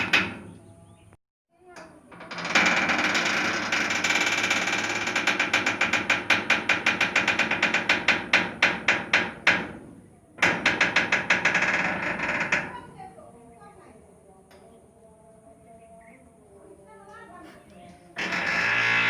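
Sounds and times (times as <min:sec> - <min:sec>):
door hinge creaking: 0:00.0 - 0:00.6, 0:01.7 - 0:13.0, 0:18.2 - 0:19.0.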